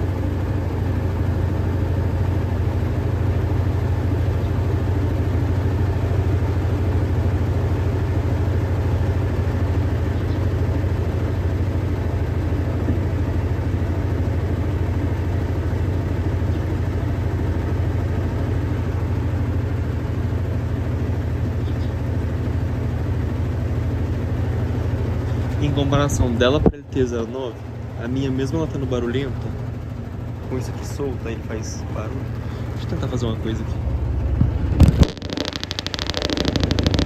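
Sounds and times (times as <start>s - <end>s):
washing machine spinning: 0.0s - 37.0s
rattling: 28.5s - 37.0s.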